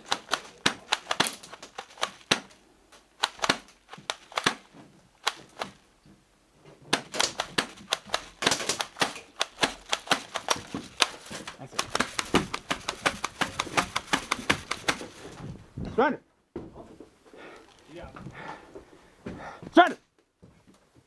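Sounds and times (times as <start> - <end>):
airsoft guns firing: 0.0 - 5.8, 6.9 - 15.2.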